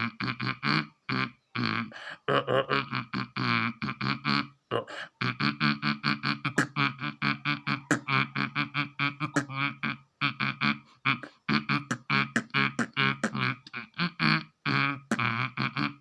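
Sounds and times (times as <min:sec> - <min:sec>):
person beatboxing: 0:00.0 - 0:16.0.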